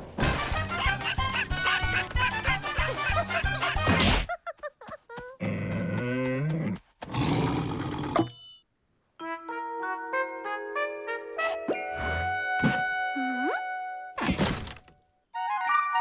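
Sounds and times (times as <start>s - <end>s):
busy rhythmic cartoon music: 0.1s - 4.1s.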